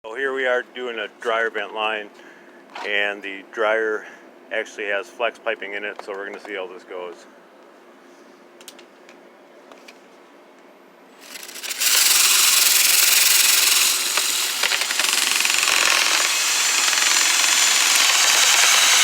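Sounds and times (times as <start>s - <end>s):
vent cleaning machine rattling: 11.2s - 19.0s.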